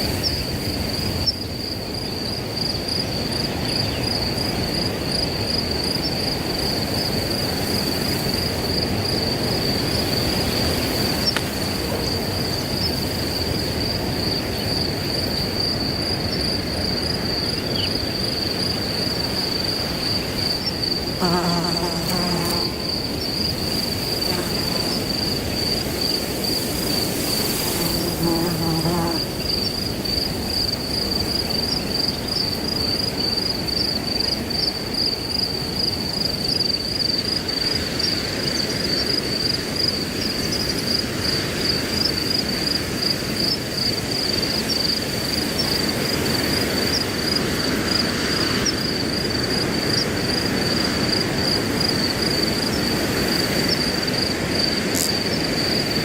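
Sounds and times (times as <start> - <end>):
crickets chirping: 0.0 - 56.0
wind rustling through grass: 0.0 - 56.0.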